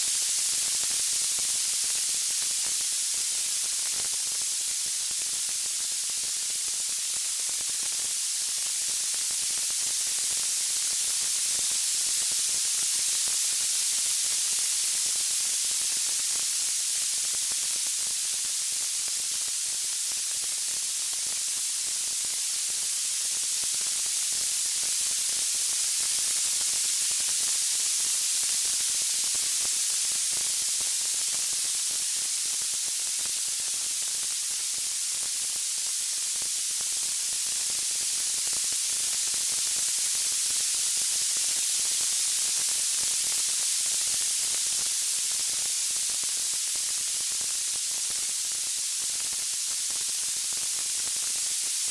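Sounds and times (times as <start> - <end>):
steady white noise hiss: 0.0 - 51.9.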